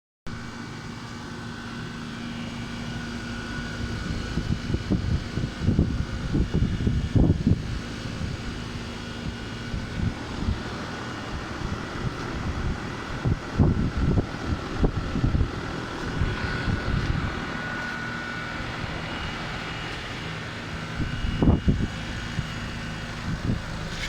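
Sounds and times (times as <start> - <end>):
air conditioner hum: 0.3 - 24.0
faint whine: 0.3 - 24.0
wind buffeting microphone: 3.6 - 24.0.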